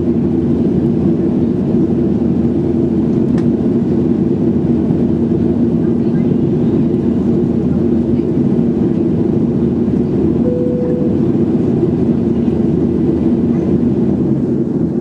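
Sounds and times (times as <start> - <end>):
airplane cabin engine drone: 0.0 - 15.0
short faint tone: 10.4 - 11.5.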